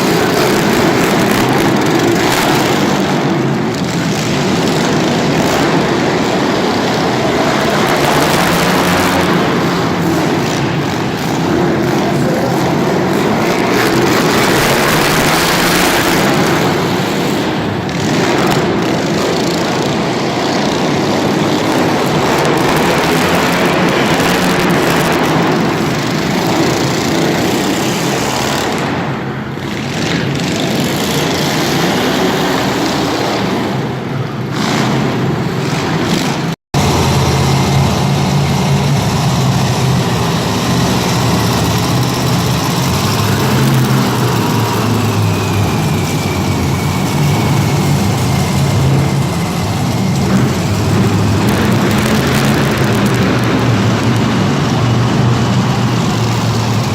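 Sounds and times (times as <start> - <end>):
monster truck engine revving: 0.0 - 56.9.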